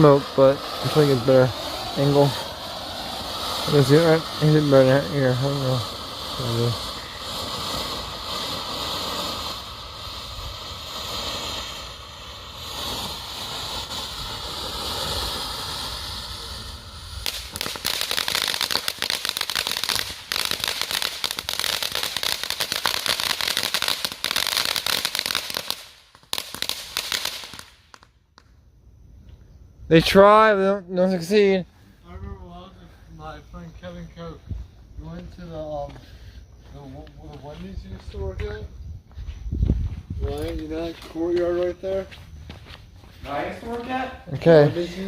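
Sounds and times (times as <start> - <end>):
firework hissing and crackling: 0.0 - 28.6, 29.9 - 45.0.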